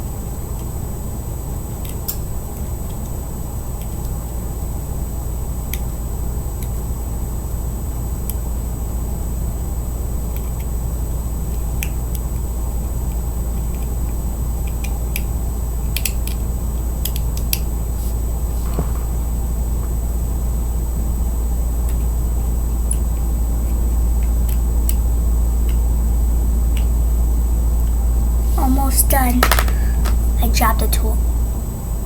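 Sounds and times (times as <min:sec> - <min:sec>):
steady low hum: 0:00.0 - 0:32.0
small tool clicking on metal: 0:15.9 - 0:16.4, 0:17.0 - 0:17.6.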